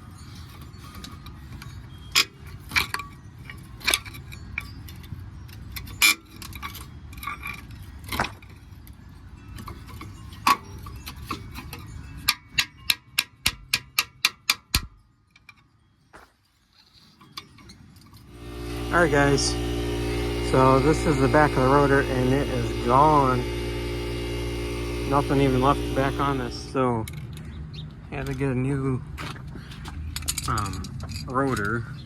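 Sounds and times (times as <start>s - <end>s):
metal tools clinking: 0.0s - 18.3s, 29.6s - 32.0s.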